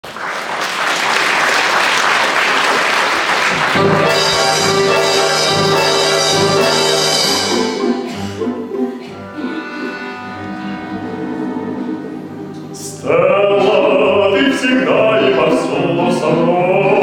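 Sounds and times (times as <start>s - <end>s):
audience applause: 0.0s - 7.7s
orchestra brass chords: 3.5s - 16.4s.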